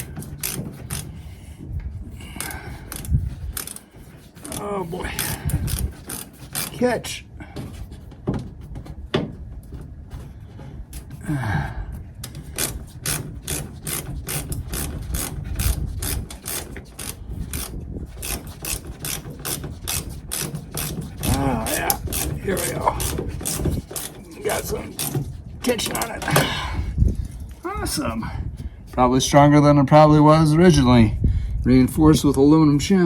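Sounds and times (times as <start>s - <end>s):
ratchet wrench clicking: 0.0s - 1.0s, 5.2s - 6.8s, 12.6s - 24.1s.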